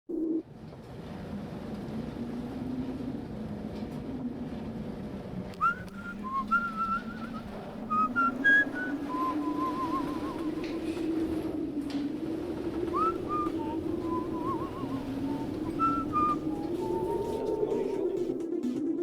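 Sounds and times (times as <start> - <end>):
steady low drone: 1.8 - 19.0
person whistling a tune: 5.6 - 10.8, 13.0 - 17.8.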